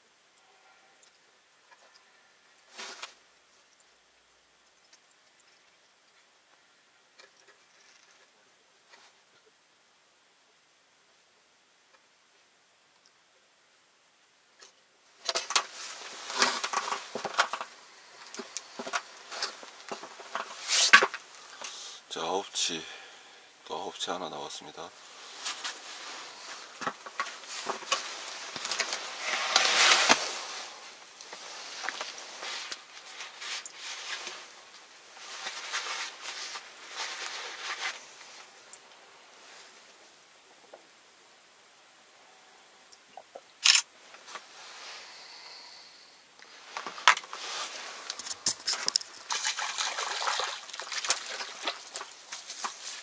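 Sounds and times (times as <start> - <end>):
rustling and crinkling handling: 15.2 - 21.8, 24.0 - 38.7, 46.4 - 53.0.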